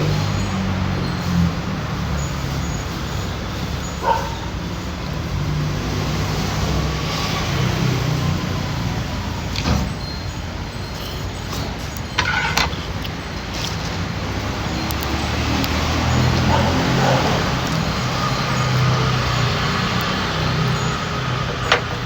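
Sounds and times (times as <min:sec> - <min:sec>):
traffic rumbling past: 0:00.0 - 0:22.0
short clinks and clatters: 0:11.5 - 0:13.2, 0:20.7 - 0:22.0.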